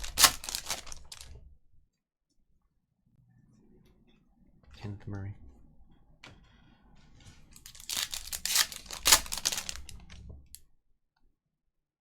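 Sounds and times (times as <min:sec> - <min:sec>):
wrapper tearing and crinkling: 0:00.0 - 0:01.4, 0:07.6 - 0:10.2.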